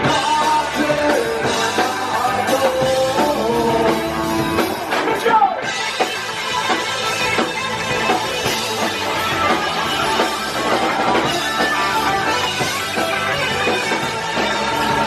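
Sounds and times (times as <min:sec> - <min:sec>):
rock band playing: 0:00.0 - 0:15.0.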